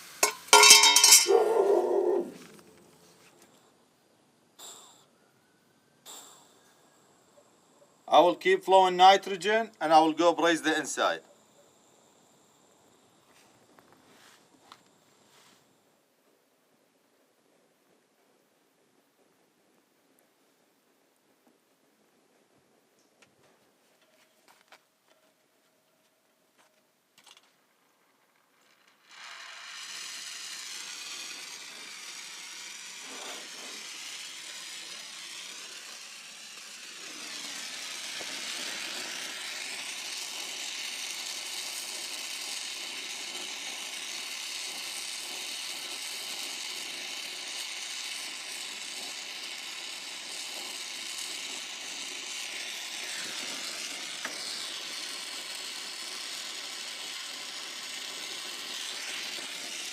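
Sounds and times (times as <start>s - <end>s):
torch flame hissing: 0.0s - 3.8s, 4.4s - 5.1s, 6.0s - 15.9s, 28.6s - 59.9s.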